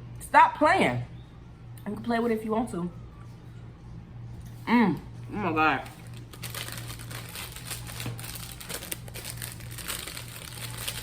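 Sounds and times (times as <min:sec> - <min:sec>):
steady low hum: 0:00.0 - 0:11.0
plastic wrapper crinkling: 0:05.8 - 0:11.0.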